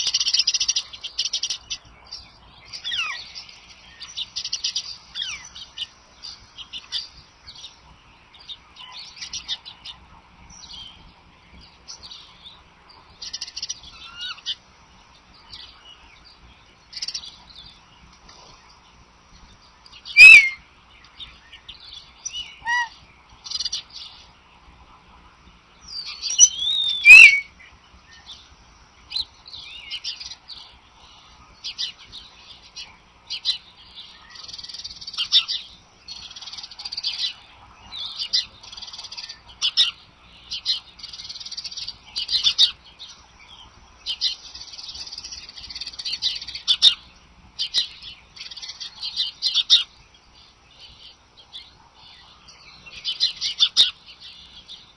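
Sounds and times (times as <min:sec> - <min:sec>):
small birds chirping and trilling: 0:00.0 - 0:54.9
high bird calls with sliding pitch: 0:20.0 - 0:20.6, 0:22.2 - 0:23.8, 0:25.9 - 0:27.6.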